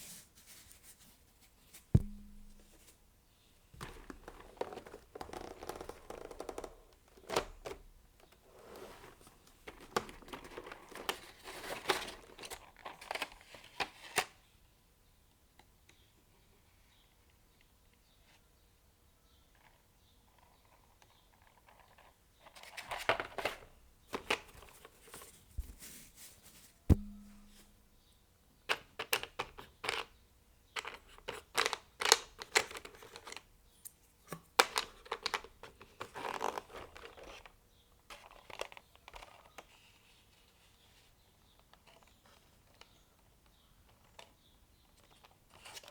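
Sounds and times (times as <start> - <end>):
sharp knock: 2.0 - 2.8, 26.9 - 27.7
packaging rustling and scraping: 8.5 - 14.1, 24.2 - 27.8.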